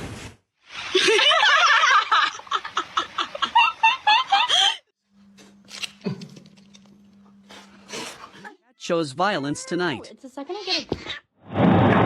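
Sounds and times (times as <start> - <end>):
person laughing hard: 1.0 - 4.8.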